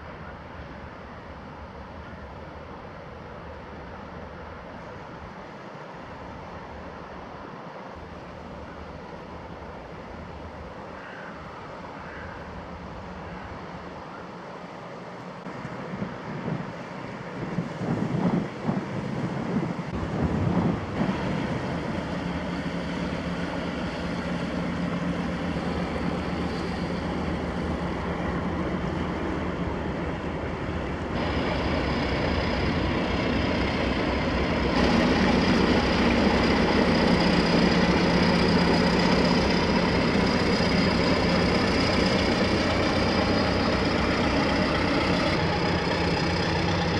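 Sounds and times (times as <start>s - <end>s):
boat diesel engine humming: 0.0s - 46.9s
gusty bumps: 17.4s - 23.2s.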